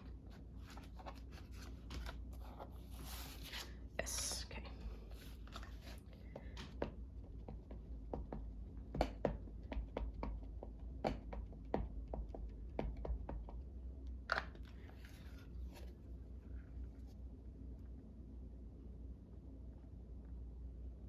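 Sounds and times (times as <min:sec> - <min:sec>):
soft rustle: 0:00.0 - 0:03.8.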